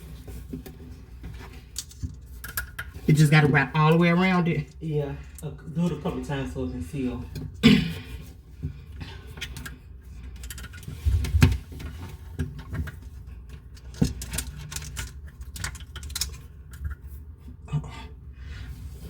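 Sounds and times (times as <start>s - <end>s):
hands handling plumbing parts: 0.0s - 3.1s, 7.1s - 17.6s.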